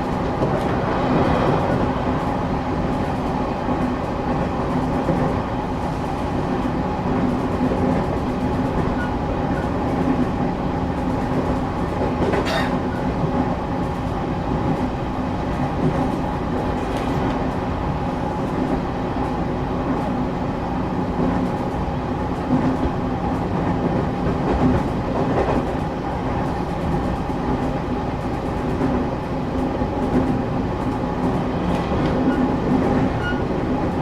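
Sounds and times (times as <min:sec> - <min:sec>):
train wheels rumbling on track: 0:00.0 - 0:34.0
sharp train clack: 0:11.4 - 0:13.1, 0:30.1 - 0:34.0.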